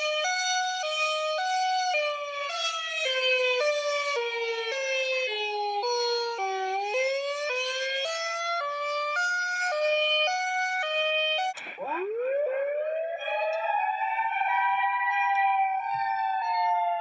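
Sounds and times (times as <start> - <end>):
electronic siren: 0.0 - 17.0
click: 11.6 - 11.8.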